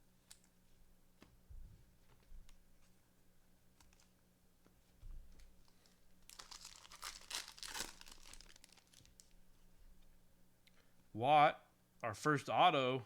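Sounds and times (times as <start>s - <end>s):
plastic wrapper tearing and crinkling: 5.6s - 9.4s.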